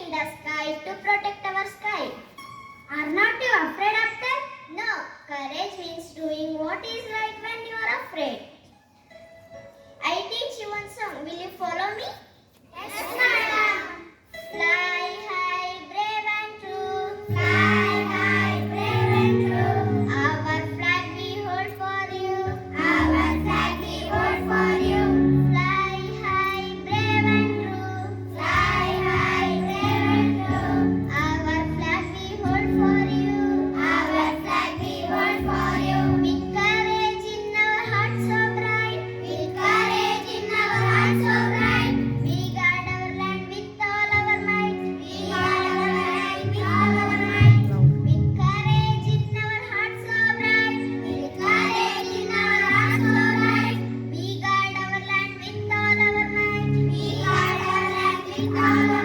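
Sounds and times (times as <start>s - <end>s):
children singing: 16.6s - 42.2s, 44.4s - 47.8s, 50.1s - 59.0s
music backing track with bass: 45.4s - 49.6s.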